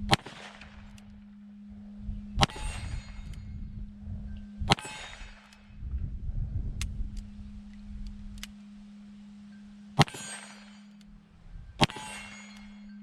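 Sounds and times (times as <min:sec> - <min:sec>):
revolver shots with metallic ring: 0:00.0 - 0:03.6, 0:04.4 - 0:05.8, 0:08.5 - 0:13.0.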